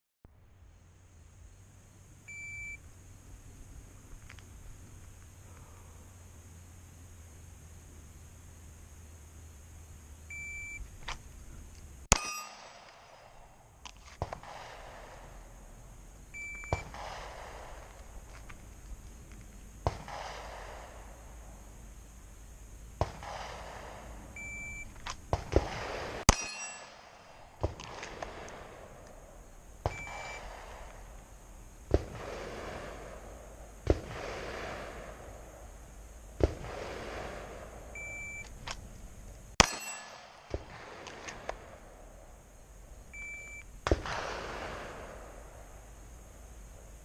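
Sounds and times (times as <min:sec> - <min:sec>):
pistol shots echoing: 0:12.1 - 0:13.6, 0:14.2 - 0:15.4, 0:16.7 - 0:18.0, 0:19.8 - 0:21.2, 0:25.3 - 0:29.2, 0:29.8 - 0:31.0, 0:39.6 - 0:41.9.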